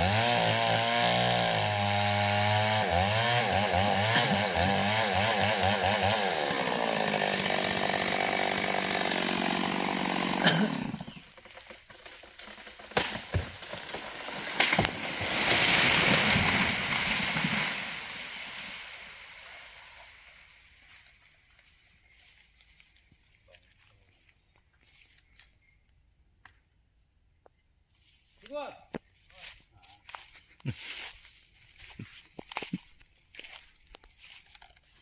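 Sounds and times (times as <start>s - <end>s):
mini chainsaw revving: 0.0s - 13.2s
sharp cracks: 9.7s - 18.7s.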